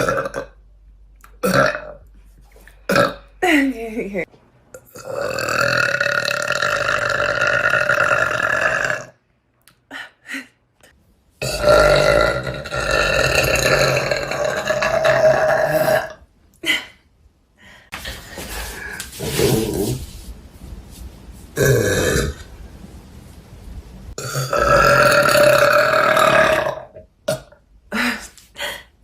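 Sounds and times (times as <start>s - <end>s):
woman burping: 0.0s - 0.6s, 1.4s - 2.0s, 2.9s - 3.3s, 4.8s - 9.1s, 11.4s - 17.0s, 24.2s - 28.1s.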